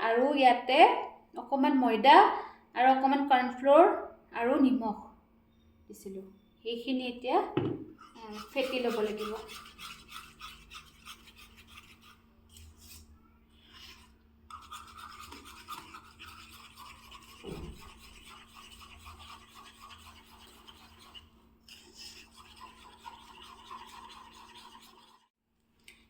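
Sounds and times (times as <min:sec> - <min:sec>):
utensil scraping a bowl: 0:08.0 - 0:25.3.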